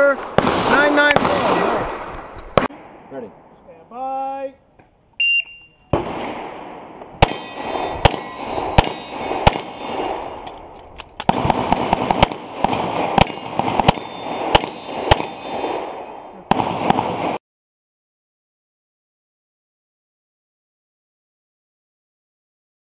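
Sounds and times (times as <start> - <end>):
pistol shots with echo: 0.2 - 2.0, 5.9 - 10.5, 11.3 - 17.4
shot timer beep: 5.2 - 5.9, 13.8 - 15.7.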